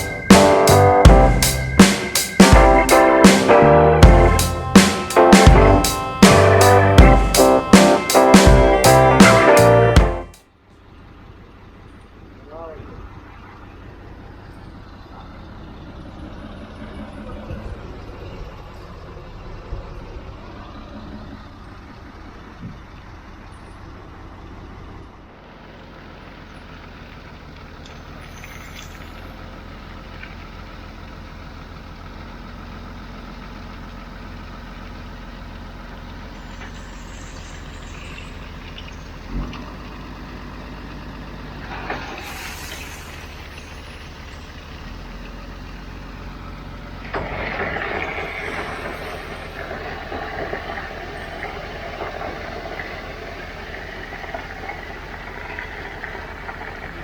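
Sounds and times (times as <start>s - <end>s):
diesel engine running: 0.0s - 57.0s
brief hiss: 41.6s - 44.2s.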